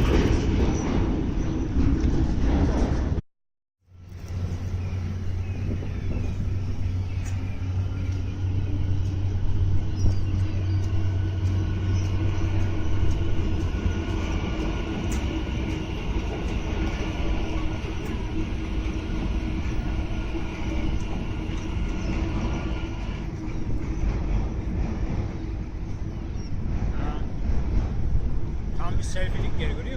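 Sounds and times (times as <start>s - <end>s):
train rolling rumble on rails: 0.0s - 3.2s, 3.8s - 29.9s
low hum: 3.8s - 28.8s
steady whine: 3.9s - 26.9s.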